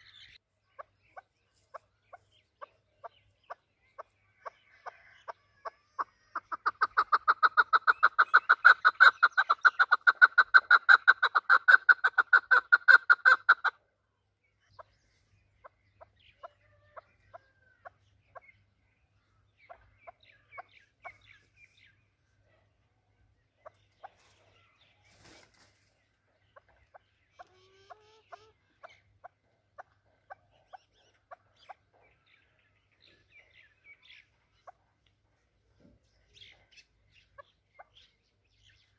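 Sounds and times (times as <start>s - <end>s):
partridge clucking call: 0.8s - 13.8s.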